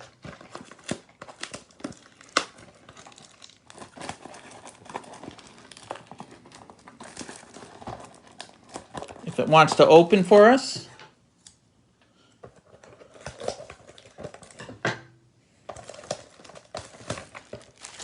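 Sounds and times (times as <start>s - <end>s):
cardboard tearing and snapping: 0.0s - 9.8s, 12.8s - 14.6s, 15.7s - 18.0s
plastic wrap crinkling: 0.0s - 10.7s, 12.5s - 14.7s, 15.6s - 18.0s.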